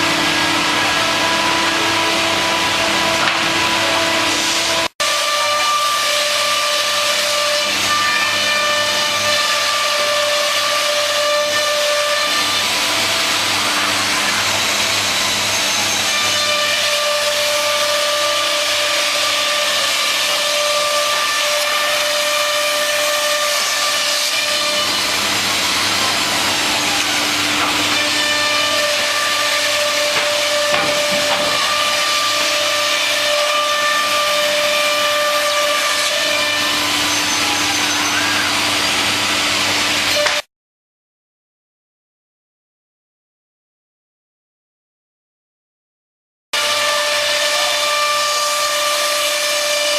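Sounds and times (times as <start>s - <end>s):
machine cutting and air noise: 0.0s - 40.5s
high spindle whine: 36.7s - 39.6s.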